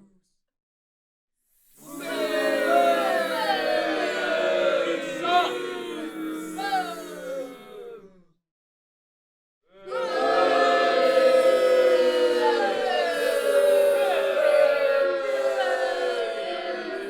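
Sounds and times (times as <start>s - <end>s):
crowd booing: 1.9s - 7.6s, 9.8s - 17.0s.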